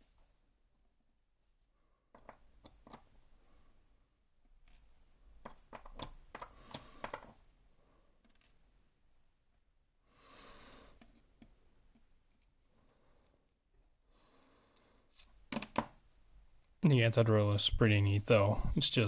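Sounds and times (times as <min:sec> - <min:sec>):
metal lock parts clicking: 0:04.6 - 0:07.3.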